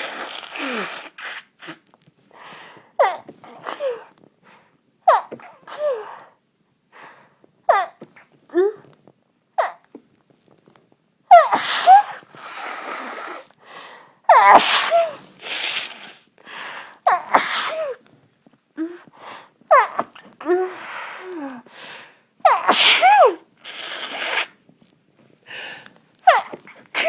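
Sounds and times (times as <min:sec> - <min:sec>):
person sneezing: 0:00.0 - 0:01.8, 0:03.0 - 0:04.1, 0:11.3 - 0:13.5, 0:14.3 - 0:16.3, 0:17.1 - 0:18.0, 0:22.5 - 0:24.6, 0:26.2 - 0:27.0.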